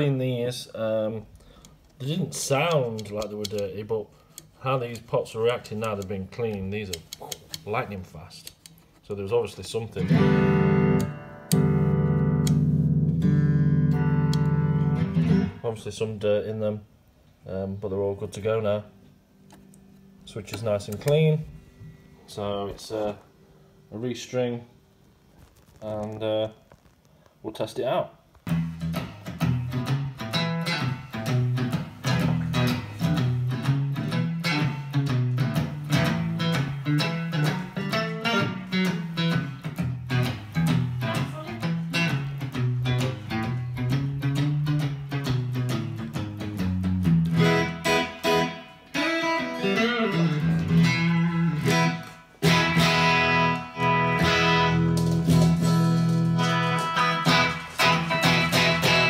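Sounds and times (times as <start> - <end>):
electric guitar chords: 10.0 - 15.6, 28.5 - 59.0
electric guitar picked notes: 10.0 - 15.6, 28.5 - 59.0.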